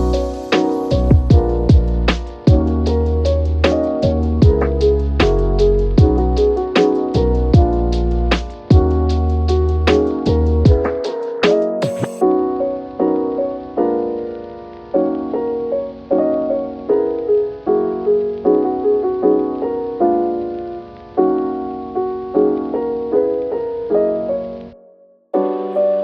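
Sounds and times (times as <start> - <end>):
music beat: 0.0 - 12.4
soft piano chords: 0.0 - 26.0.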